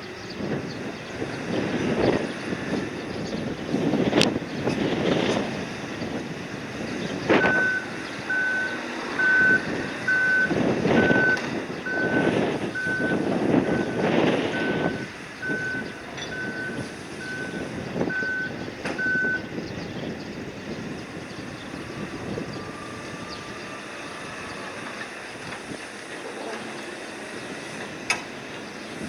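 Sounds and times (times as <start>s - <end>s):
rushing noise: 0.0s - 19.6s, 20.4s - 29.0s
reversing alarm beeps: 7.4s - 19.5s.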